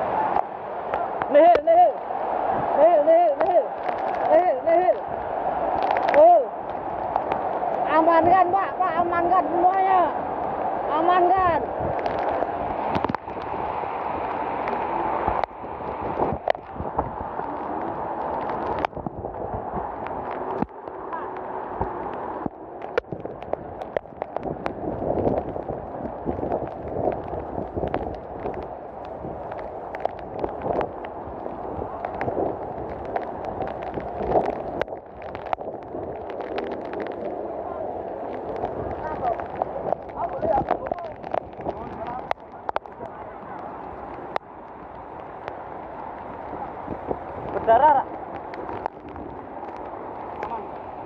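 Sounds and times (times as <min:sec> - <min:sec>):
heavy rain and wind rushing: 0:00.0 - 0:51.0.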